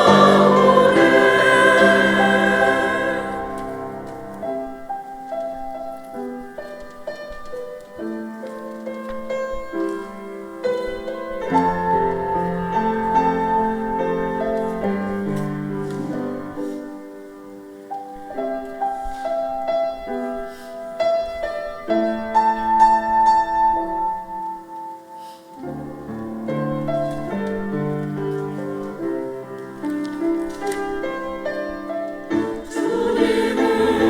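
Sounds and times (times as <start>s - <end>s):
piano playing slow sustained chords: 0.0s - 6.5s.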